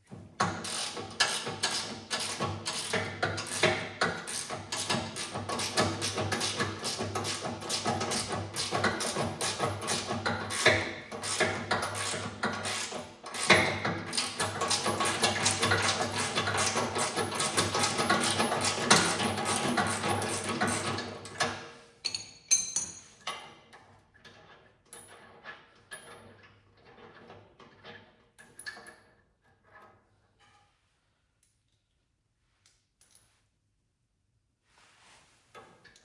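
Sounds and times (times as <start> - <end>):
metallic clinks of tools: 22.0 - 23.4.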